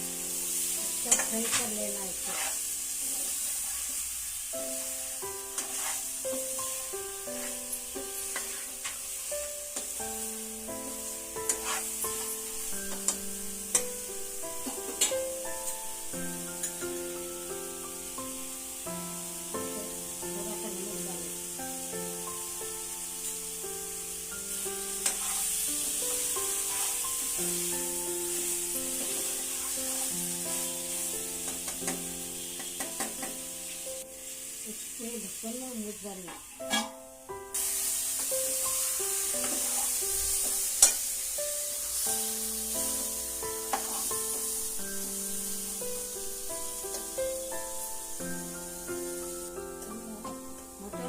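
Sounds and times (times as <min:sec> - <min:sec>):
soft background music: 0:00.0 - 0:03.4, 0:04.6 - 0:51.0
meat sizzling in oil: 0:00.0 - 0:51.0
spoon stirring and scraping pan: 0:00.4 - 0:04.2, 0:04.8 - 0:10.0, 0:10.7 - 0:14.0, 0:14.6 - 0:15.8, 0:24.8 - 0:33.4, 0:36.3 - 0:37.0, 0:37.7 - 0:41.2, 0:43.6 - 0:45.1
spoon scraping and clinking on pan: 0:01.1 - 0:03.8, 0:05.6 - 0:06.0, 0:11.5 - 0:12.4, 0:25.0 - 0:25.5, 0:36.6 - 0:37.0, 0:39.4 - 0:41.0
soft instrumental melody: 0:04.6 - 0:34.5, 0:36.6 - 0:51.0.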